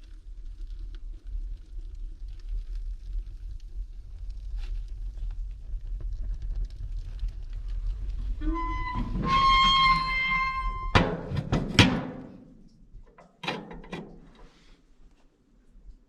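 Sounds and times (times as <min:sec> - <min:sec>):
metal squeal: 0:08.4 - 0:11.3
wood stove door clanks: 0:08.8 - 0:12.4, 0:13.2 - 0:14.3.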